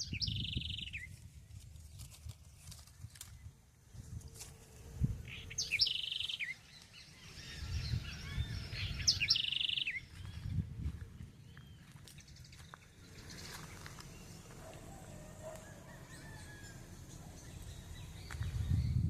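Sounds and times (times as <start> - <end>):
faint bird chirps: 0.0 - 1.2, 5.0 - 10.6
songbird singing trills: 0.0 - 1.3, 5.0 - 19.0.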